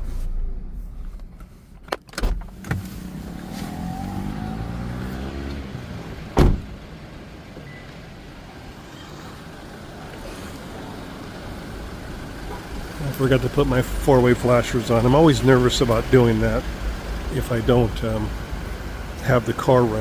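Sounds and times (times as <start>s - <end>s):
steady traffic: 0.0s - 20.0s
vehicle engine: 0.0s - 20.0s
car door slamming shut: 6.2s - 6.8s
car door clicking open: 6.4s - 6.7s.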